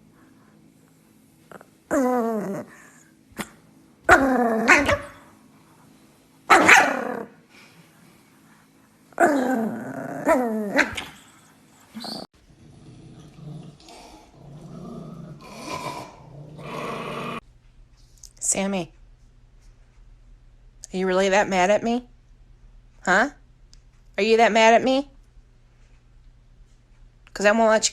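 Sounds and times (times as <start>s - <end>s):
dog growling: 1.5s - 3.1s, 4.1s - 5.2s, 6.5s - 7.4s, 9.1s - 11.2s, 11.9s - 17.4s
dog barking: 6.5s - 7.2s.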